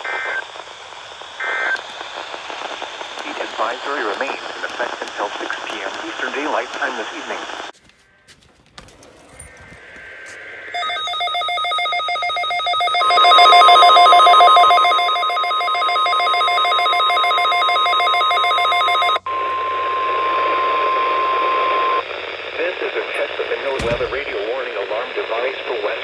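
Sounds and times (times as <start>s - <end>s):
steady single-pitch alarm tone: 10.7s - 22.0s
alarm click: 10.8s - 19.7s, 23.2s - 24.4s
pulsing electronic alarm beeps: 10.8s - 22.0s.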